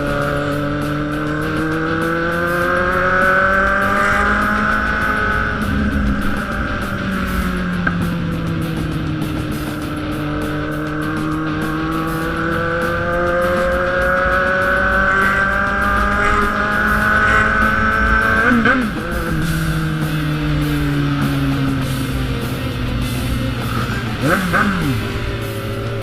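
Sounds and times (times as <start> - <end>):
motorcycle engine accelerating: 0.0 - 26.0.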